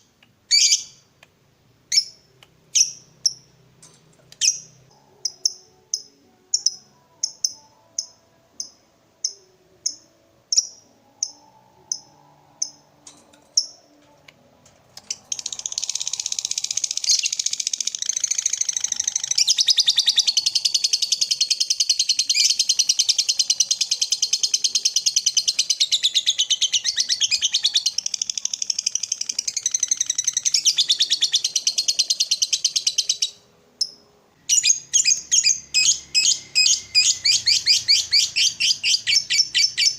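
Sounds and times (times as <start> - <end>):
lovebird chirping: 0.5 - 1.0, 1.9 - 3.6, 4.3 - 14.1, 15.0 - 39.9
lovebird chattering trill: 15.2 - 33.4, 34.5 - 39.9.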